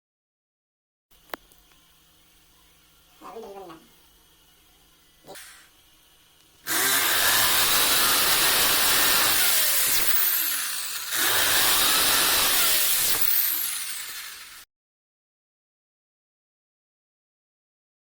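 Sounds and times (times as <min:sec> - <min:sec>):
power drill boring into wall: 0:06.6 - 0:14.7.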